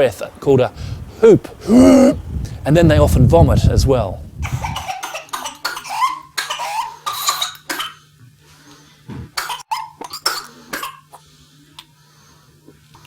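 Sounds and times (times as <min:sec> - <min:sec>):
faint steady hum: 0:00.0 - 0:13.0
high-pitched gasping breaths: 0:00.8 - 0:02.6
child coughing: 0:01.7 - 0:02.2, 0:04.4 - 0:08.0, 0:09.4 - 0:11.1.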